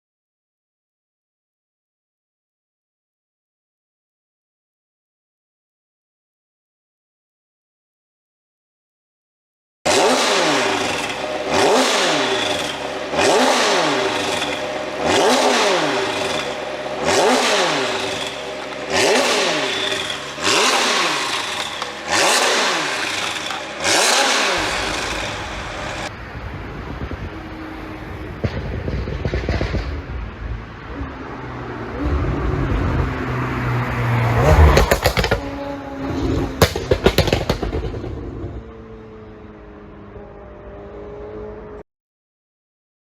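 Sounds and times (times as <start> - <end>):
car engine revving: 9.9 - 26.1, 27.2 - 41.7
exhaust crackling pops: 28.3 - 30.4, 34.5 - 38.7.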